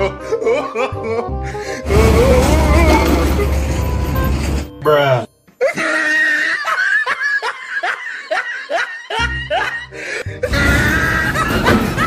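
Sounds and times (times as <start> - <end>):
music: 0.0 - 5.7, 8.6 - 12.0.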